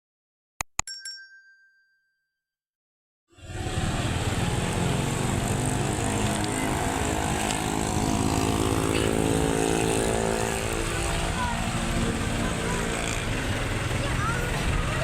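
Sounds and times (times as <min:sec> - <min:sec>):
bus diesel engine running: 0:03.4 - 0:15.0.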